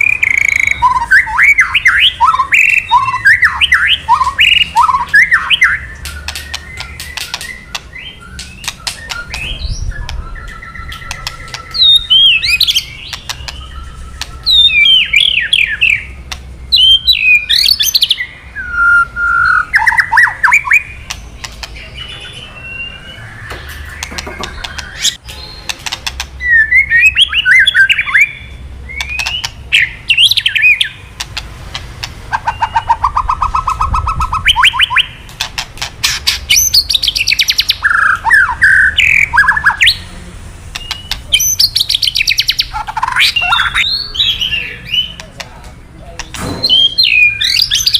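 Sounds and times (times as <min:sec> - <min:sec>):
songbird whistling phrases: 0:00.0 - 0:21.0, 0:21.8 - 0:25.7, 0:26.4 - 0:31.0, 0:32.3 - 0:35.2, 0:36.5 - 0:40.0, 0:40.8 - 0:45.2, 0:46.5 - 0:47.9
bird trill: 0:00.0 - 0:45.3, 0:46.2 - 0:47.9
bird clicking notes: 0:02.9 - 0:14.6.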